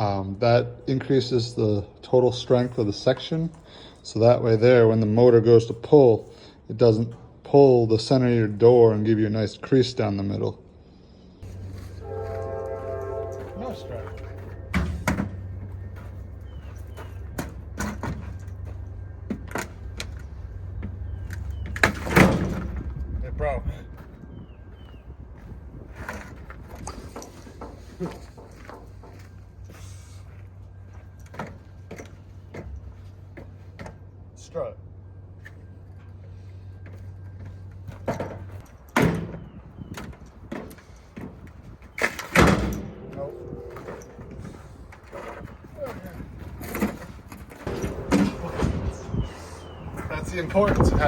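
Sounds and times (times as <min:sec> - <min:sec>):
garage door opener humming: 0:42.2 - 0:50.8
garage door creaks and knocks: 0:46.6 - 0:50.1.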